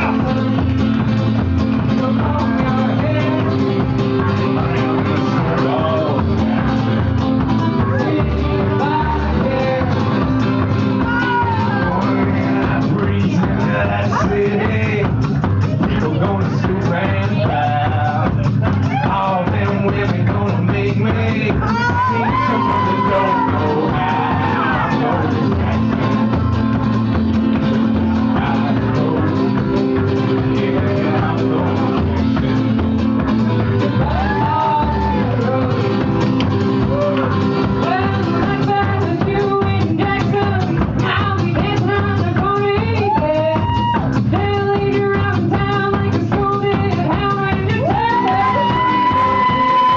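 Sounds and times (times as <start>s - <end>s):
electric guitar: 0.0s - 49.9s
steady drum beat: 0.0s - 49.9s.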